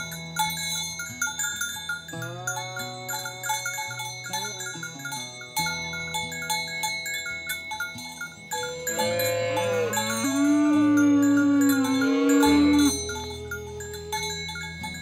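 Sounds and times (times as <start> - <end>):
short bell-like notes: 0.0 - 15.0
held low notes: 8.7 - 15.0.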